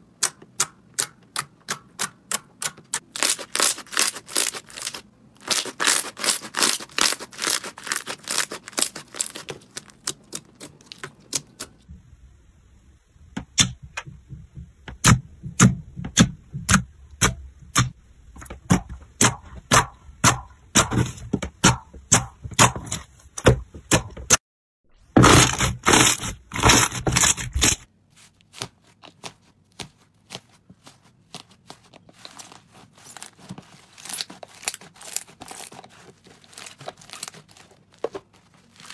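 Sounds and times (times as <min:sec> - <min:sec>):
crunchy slime crackling: 0:02.0 - 0:11.9, 0:25.2 - 0:38.9.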